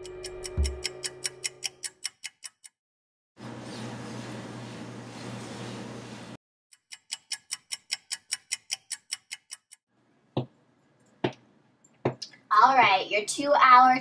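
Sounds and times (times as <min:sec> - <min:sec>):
clock ticking fast: 0:00.0 - 0:02.8, 0:06.7 - 0:09.8.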